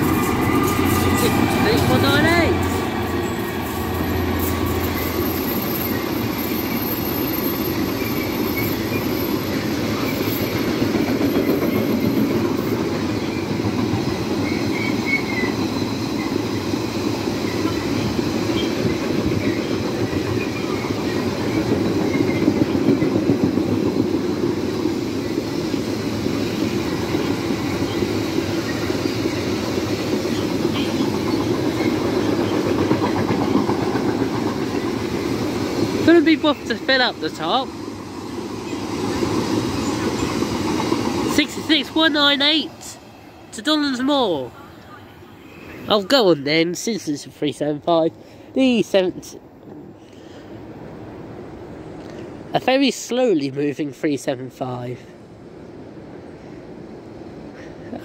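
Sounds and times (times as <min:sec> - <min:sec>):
freight train wheels clacking: 0:00.0 - 0:44.4.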